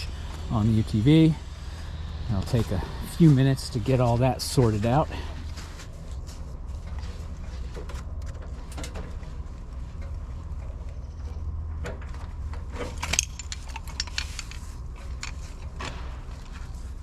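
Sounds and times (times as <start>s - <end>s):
steady low rumble: 0.0s - 17.0s
metal clinks and clanks: 12.7s - 15.7s.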